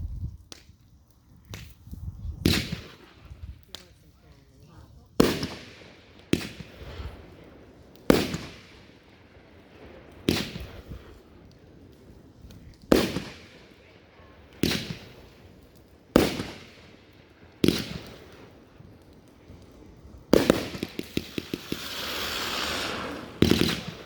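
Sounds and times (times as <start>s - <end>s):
fireworks bangs: 5.2s - 11.3s, 12.5s - 24.0s.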